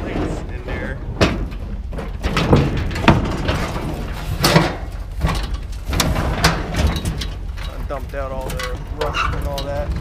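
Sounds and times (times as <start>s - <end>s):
scrap metal clanking: 0.0s - 10.0s.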